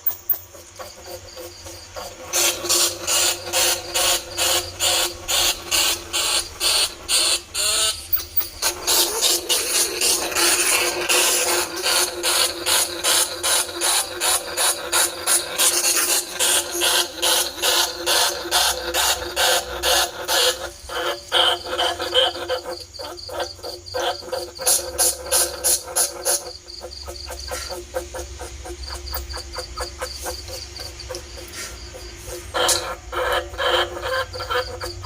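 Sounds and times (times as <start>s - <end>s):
rats squealing: 0.0s - 35.0s.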